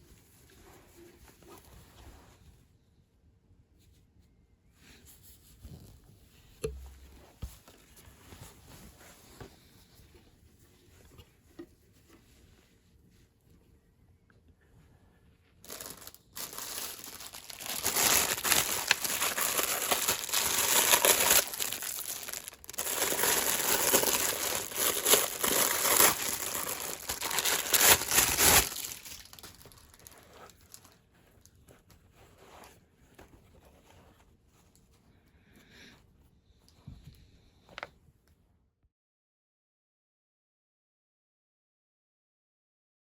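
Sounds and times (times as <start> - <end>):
packaging crinkling: 15.6 - 31.6.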